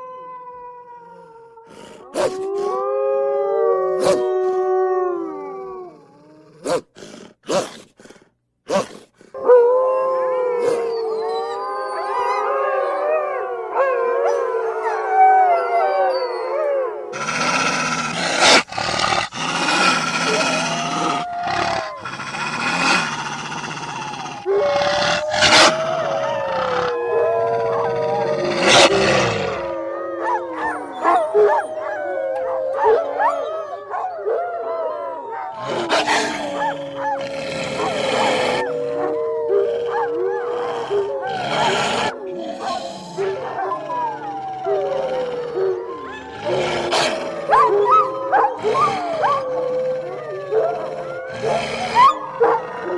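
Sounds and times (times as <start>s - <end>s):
wolves howling: 0.0s - 6.4s, 9.4s - 52.9s
rough growl-like call: 17.1s - 32.7s, 35.5s - 52.9s
wolf yelp: 17.2s - 31.7s, 35.5s - 39.0s, 45.9s - 49.8s, 50.5s - 52.9s
wolves yipping: 17.2s - 34.4s, 35.3s - 52.9s.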